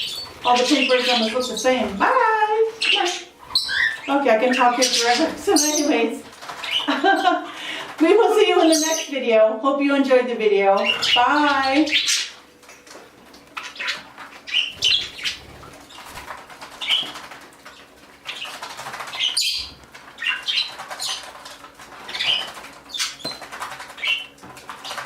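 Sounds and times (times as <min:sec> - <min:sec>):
budgerigars chirping: 0:00.0 - 0:02.1, 0:02.7 - 0:07.3, 0:08.6 - 0:09.1, 0:10.8 - 0:12.4, 0:13.6 - 0:21.4, 0:22.0 - 0:25.0.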